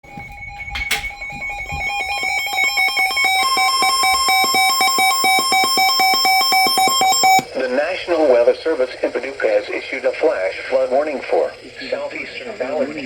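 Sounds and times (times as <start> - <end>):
rapid electronic alert beeps: 0.1 - 7.5.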